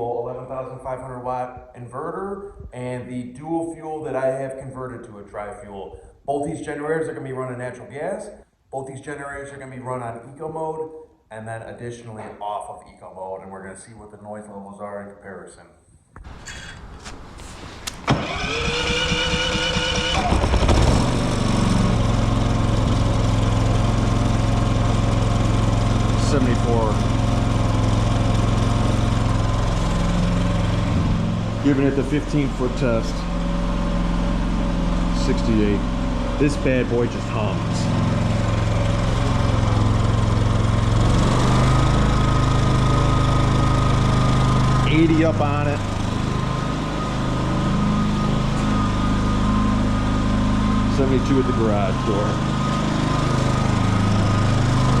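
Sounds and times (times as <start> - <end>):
generator starting whine: 16.2 - 55.0
generator engine running: 16.3 - 55.0.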